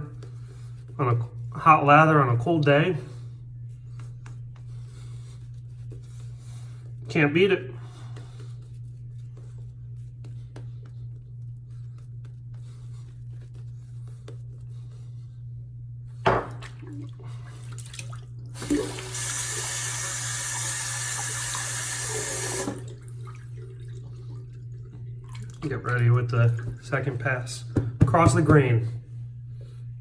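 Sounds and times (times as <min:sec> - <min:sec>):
water tap running into sink: 0:18.5 - 0:24.6.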